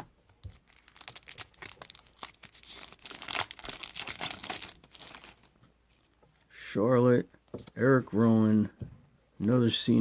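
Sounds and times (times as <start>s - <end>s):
wrapper tearing and crinkling: 0.5s - 5.5s.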